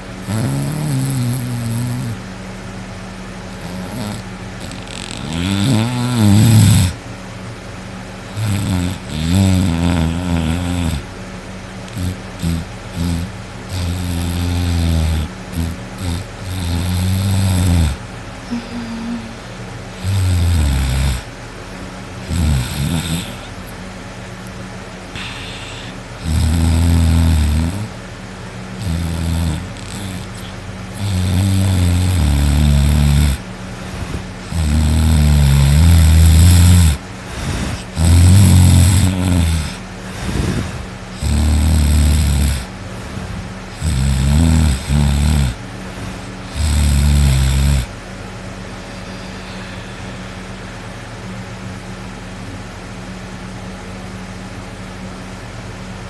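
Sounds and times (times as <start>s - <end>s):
person snoring loudly: 0.0s - 2.2s, 3.5s - 7.0s, 8.3s - 11.1s, 11.9s - 21.3s, 22.2s - 23.7s, 25.1s - 28.0s, 28.8s - 48.0s, 48.7s - 50.8s.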